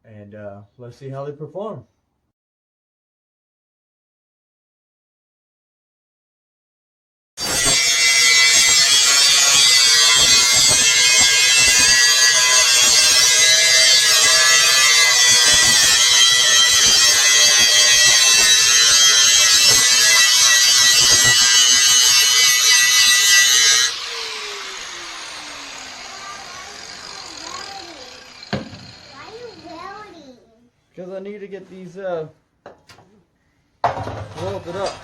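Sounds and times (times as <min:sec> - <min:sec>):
welding arc hissing: 0:07.4 - 0:29.6.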